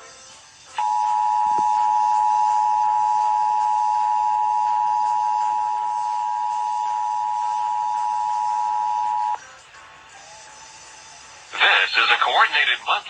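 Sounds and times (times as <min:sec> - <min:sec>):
two-tone alert signal: 0:00.8 - 0:09.4.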